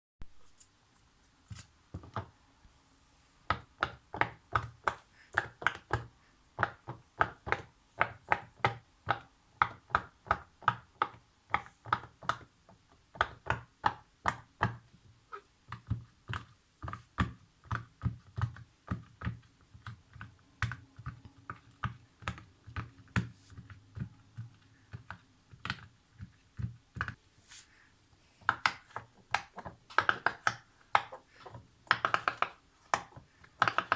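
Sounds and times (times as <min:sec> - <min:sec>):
fidget toy bubbles popping: 0:28.5 - 0:33.9.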